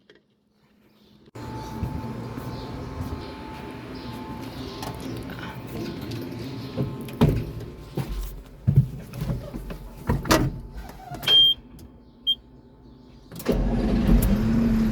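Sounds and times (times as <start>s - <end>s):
diesel engine starting and running: 1.4s - 8.0s, 10.4s - 14.9s
short electronic beeps: 11.3s - 11.6s.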